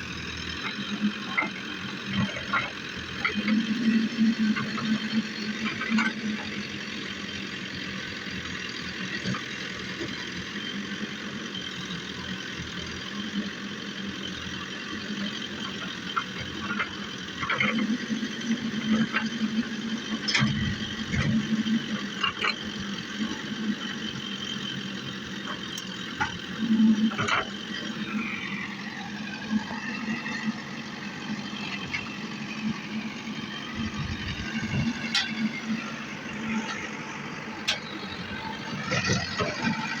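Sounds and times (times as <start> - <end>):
backhoe engine running: 0.0 - 40.0.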